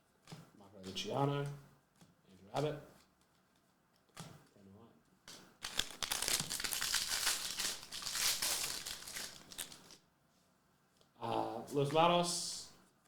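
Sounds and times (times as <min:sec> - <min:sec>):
foil wrapper crinkling: 0:05.3 - 0:10.0.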